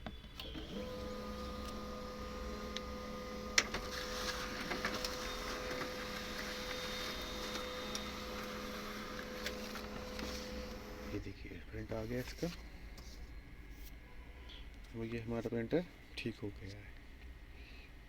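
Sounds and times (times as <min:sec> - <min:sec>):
paper feeding through printer: 0:00.4 - 0:11.2
printer click: 0:00.4 - 0:11.2
printer motor and gear hum: 0:00.4 - 0:11.3.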